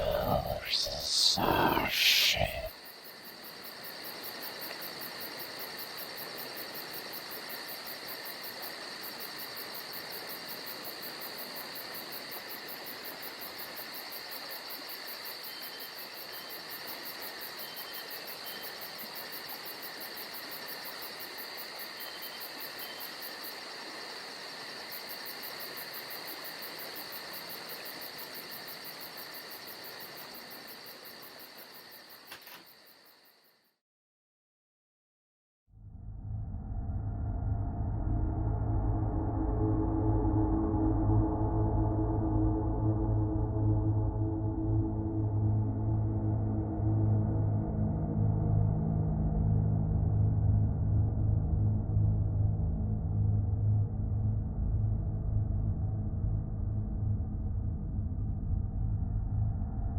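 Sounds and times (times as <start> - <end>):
crickets chirping: 0.0 - 33.7.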